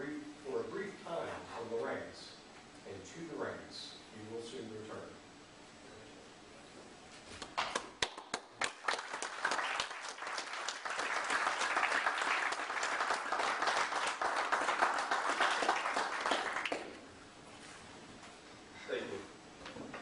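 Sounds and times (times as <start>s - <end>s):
audience applause: 8.0s - 17.0s.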